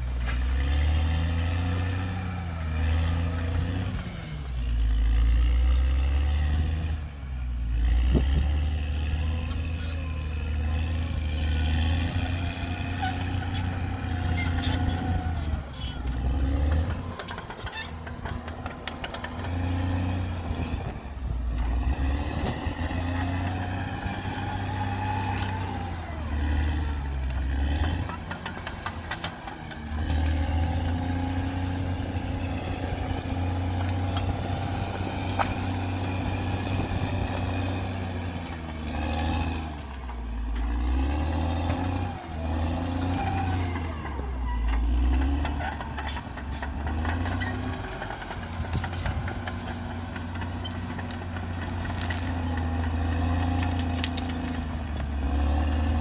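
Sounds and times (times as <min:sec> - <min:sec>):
bulldozer diesel engine: 0:00.0 - 0:56.0
metallic clatter of tracks: 0:13.1 - 0:21.0, 0:26.5 - 0:36.2, 0:43.2 - 0:55.4.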